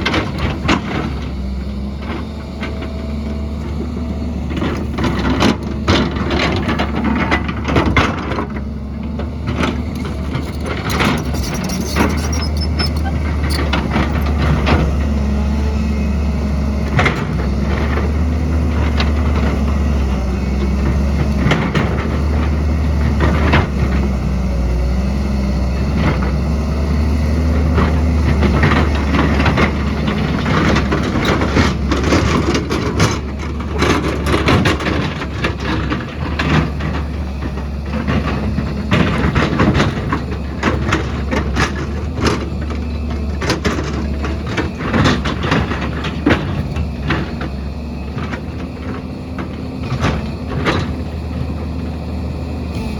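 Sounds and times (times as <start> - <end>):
heavy diesel machine running: 0.0 - 52.9
clanks of rock and steel: 4.5 - 15.1.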